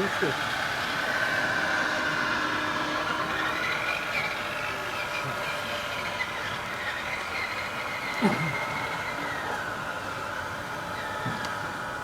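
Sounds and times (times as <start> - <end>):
small electric motors whining: 0.0 - 12.0.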